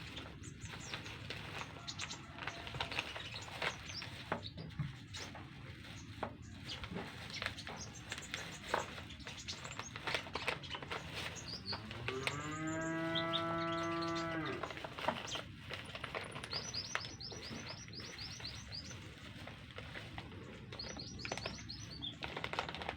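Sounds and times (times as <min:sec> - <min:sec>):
songbird chirping: 0:07.4 - 0:15.4, 0:16.4 - 0:19.4, 0:20.4 - 0:22.3
cow mooing: 0:11.8 - 0:14.7.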